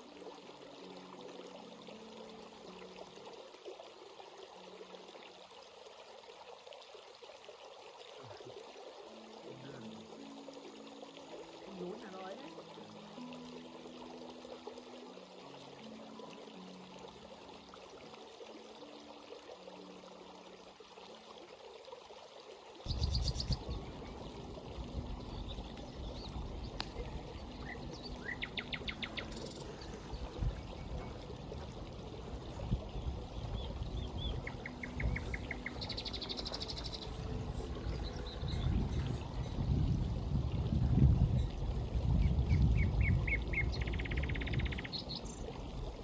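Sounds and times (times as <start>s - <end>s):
stream babbling over rocks: 0.0s - 46.0s
birds trilling: 22.9s - 32.5s, 33.1s - 39.6s.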